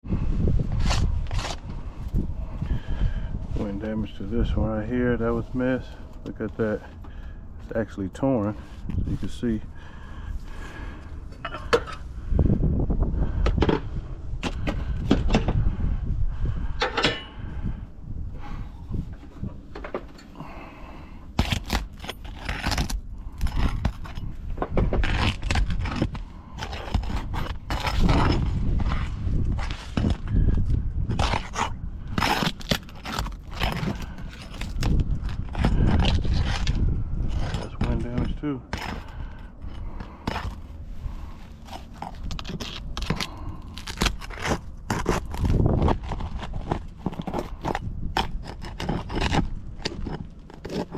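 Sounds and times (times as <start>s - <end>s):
boots scraping on roof shingles: 21.4s - 50.9s.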